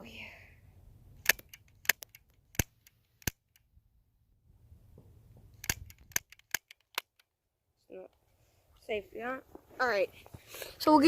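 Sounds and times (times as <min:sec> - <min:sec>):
bb gun firing sharp pops: 0:01.2 - 0:03.4, 0:05.6 - 0:07.2.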